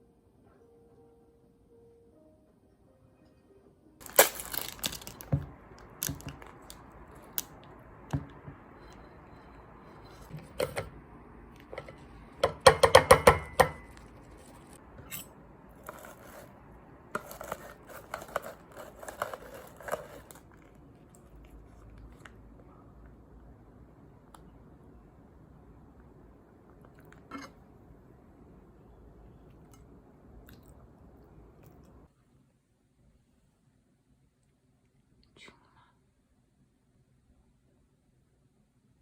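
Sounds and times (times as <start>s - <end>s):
rustling and tearing: 4.0s - 7.5s, 17.2s - 20.9s.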